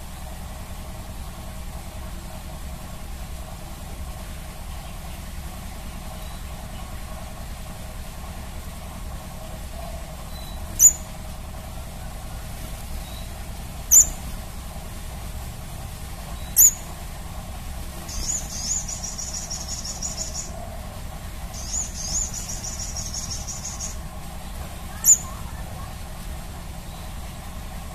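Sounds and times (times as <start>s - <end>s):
bird trilled song: 6.1s - 6.9s, 9.8s - 11.2s, 13.0s - 14.2s, 16.3s - 16.9s, 18.0s - 20.7s, 21.5s - 25.7s, 26.9s - 27.2s
bird calling high notes: 24.9s - 25.8s.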